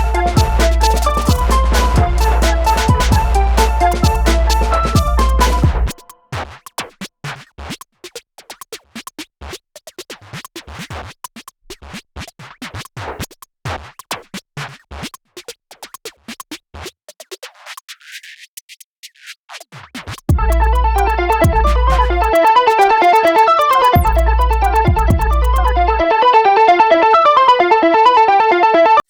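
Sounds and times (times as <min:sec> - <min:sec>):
electronic music: 0:00.0 - 0:06.2, 0:20.3 - 0:29.0
rapid irregular clicks and ticks: 0:00.0 - 0:26.0.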